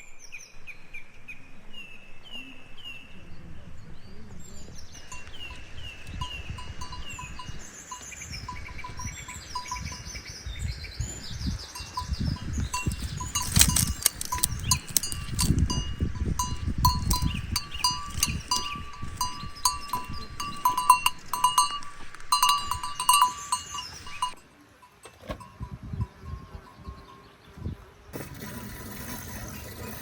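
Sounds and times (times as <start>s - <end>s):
small metal bells clanking: 5.0s - 10.2s, 11.7s - 27.4s.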